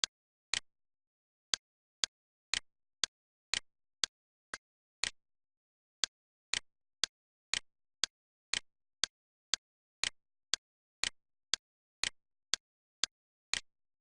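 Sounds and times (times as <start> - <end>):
sharp alternating clicks: 6.5 - 13.7.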